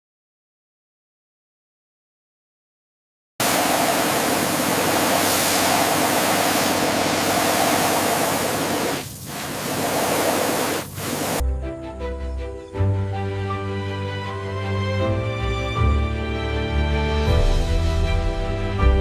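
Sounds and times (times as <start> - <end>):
loud rushing hiss: 3.4 - 11.4
soft music with sustained notes: 11.4 - 19.0.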